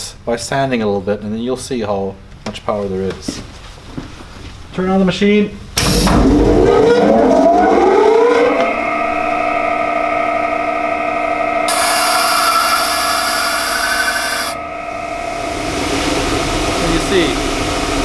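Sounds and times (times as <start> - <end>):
sanding machine motor whine: 7.2 - 18.0
wood sanding hiss: 11.7 - 14.6.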